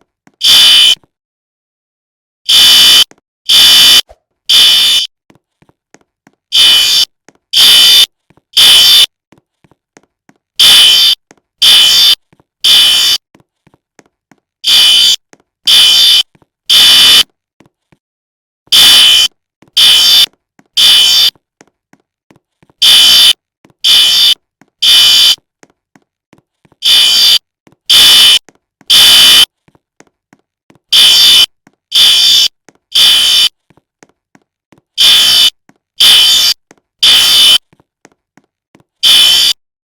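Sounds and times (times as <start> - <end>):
fire alarm beeps: 0.4 - 1.0, 2.5 - 5.1, 6.5 - 9.1, 10.6 - 13.2, 14.6 - 17.2, 18.7 - 21.3, 22.8 - 25.4, 26.8 - 29.5, 30.9 - 33.5, 35.0 - 37.6, 39.0 - 39.6.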